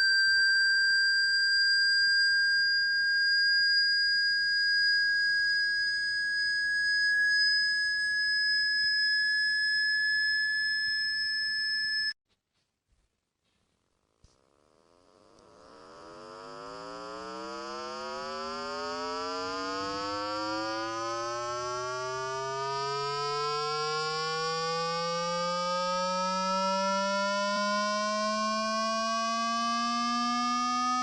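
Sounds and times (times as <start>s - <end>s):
low tone gliding upward: 14.7s - 31.0s.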